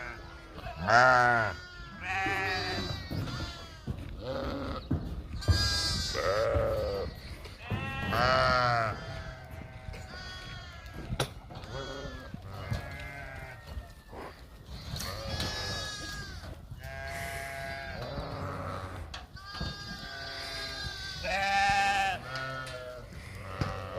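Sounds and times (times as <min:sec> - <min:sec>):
goats bleating: 0:00.0 - 0:23.9.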